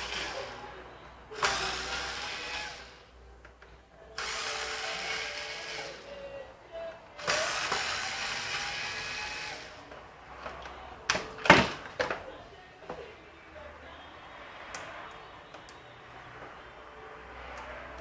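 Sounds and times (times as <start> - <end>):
power drill whining: 0.0 - 3.1, 4.2 - 6.2, 7.2 - 9.9.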